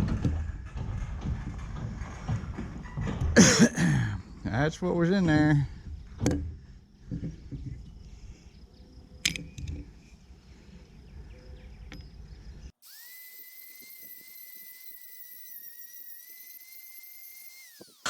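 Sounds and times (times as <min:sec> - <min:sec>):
small motor whining: 0:12.8 - 0:18.0.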